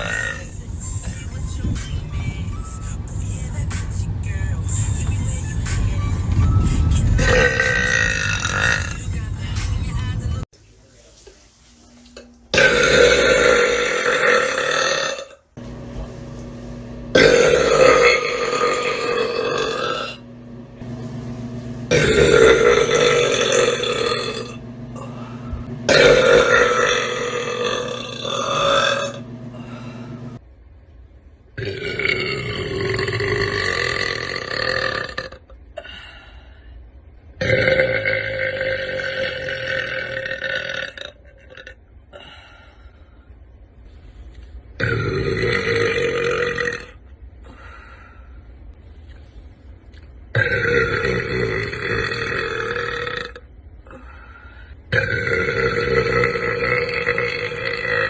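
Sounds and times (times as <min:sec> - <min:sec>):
woman burping: 0:07.2 - 0:09.0, 0:12.5 - 0:15.4, 0:17.2 - 0:20.2, 0:21.9 - 0:24.6, 0:25.9 - 0:29.2, 0:50.4 - 0:53.5, 0:54.9 - 0:58.0.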